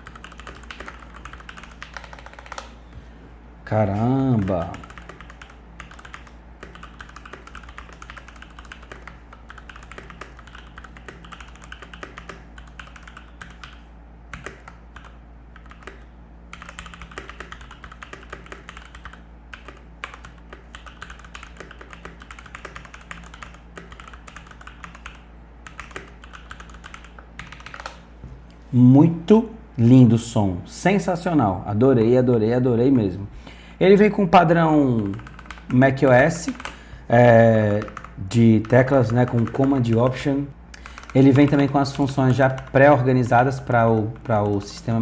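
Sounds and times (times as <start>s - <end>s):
fast typing on mechanical keyboard: 0.0s - 2.7s, 4.2s - 28.0s, 35.0s - 35.8s, 36.4s - 40.2s, 40.8s - 45.0s.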